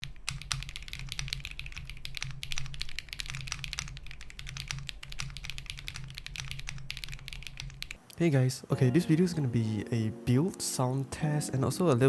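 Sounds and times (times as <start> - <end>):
mechanical keyboard typing: 0.0 - 8.0.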